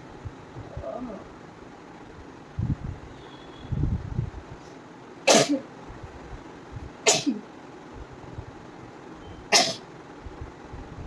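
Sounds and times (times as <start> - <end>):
person sneezing: 5.3 - 5.7, 7.1 - 7.4, 9.5 - 9.8.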